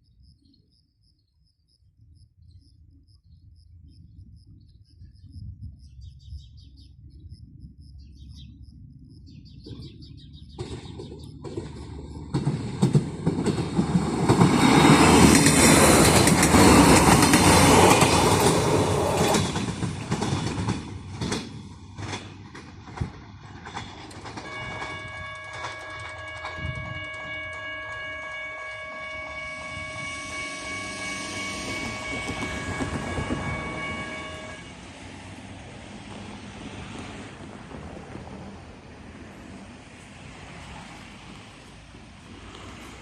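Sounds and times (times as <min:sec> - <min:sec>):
train rumbling past: 0:08.9 - 0:43.0
rail-joint clicks: 0:10.5 - 0:34.5.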